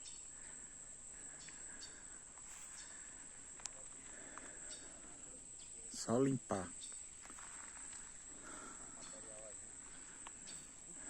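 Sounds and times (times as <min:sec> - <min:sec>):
faint chirps: 0:00.0 - 0:11.0
high-pitched insect chorus: 0:00.0 - 0:11.0.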